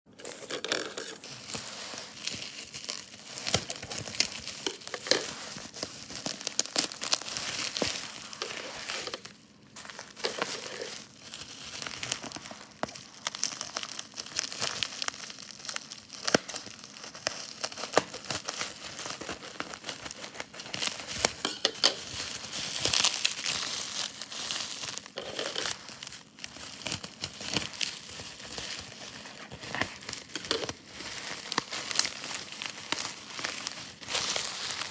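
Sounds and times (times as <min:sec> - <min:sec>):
packaging wrap crinkling and tearing: 0:00.1 - 0:34.9.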